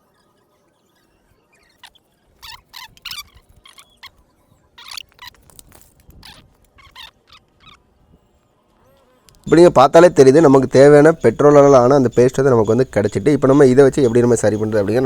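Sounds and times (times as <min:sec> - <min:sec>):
polystyrene foam squeaking: 0:04.8 - 0:07.8.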